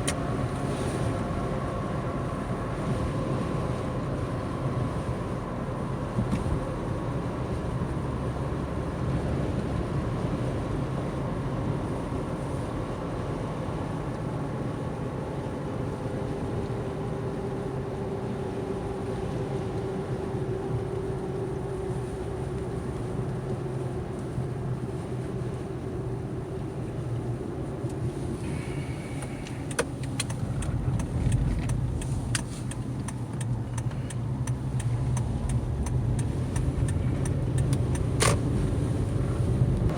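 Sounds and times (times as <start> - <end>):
car engine hum: 0.0 - 39.9
road and tyre noise: 0.0 - 39.9
sharp clicks: 29.2 - 38.4.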